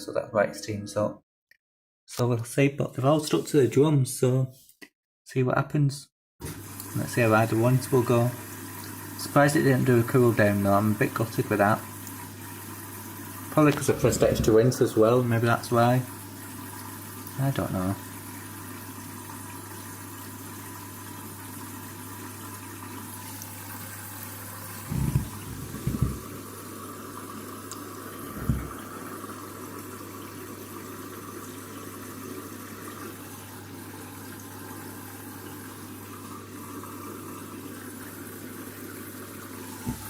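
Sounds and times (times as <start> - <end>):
water running into drum: 6.4 - 40.0
low thumps: 24.9 - 26.4.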